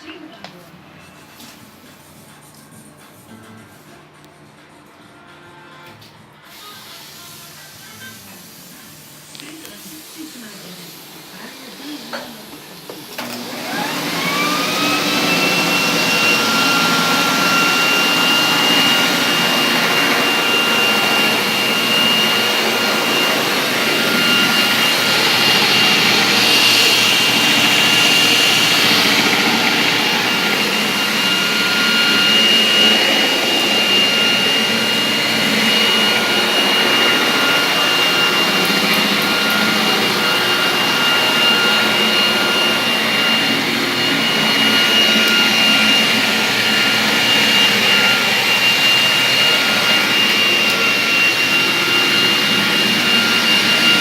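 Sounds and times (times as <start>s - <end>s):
floor polisher motor whine: 6.5s - 54.0s
rushing air: 16.0s - 54.0s.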